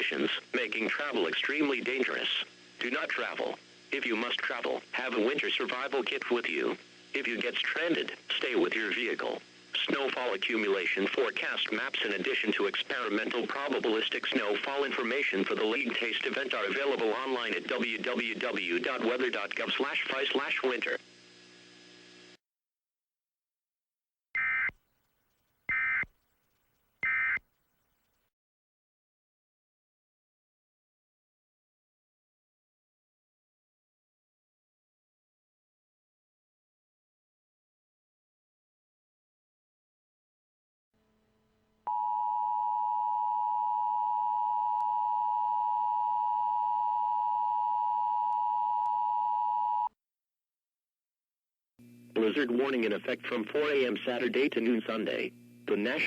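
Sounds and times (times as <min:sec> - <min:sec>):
digital data tone bursts: 0:24.4 - 0:24.7, 0:25.7 - 0:26.1, 0:27.0 - 0:27.4
two-tone alarm signal: 0:24.4 - 0:24.7, 0:25.7 - 0:26.1, 0:27.0 - 0:27.4, 0:41.9 - 0:49.9.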